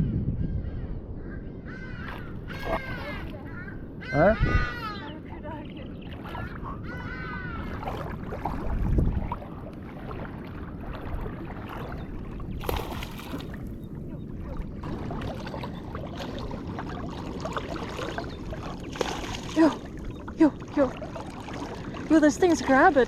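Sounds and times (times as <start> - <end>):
wind hitting the microphone: 0.0 - 23.0
waves washing on a beach: 5.2 - 23.0.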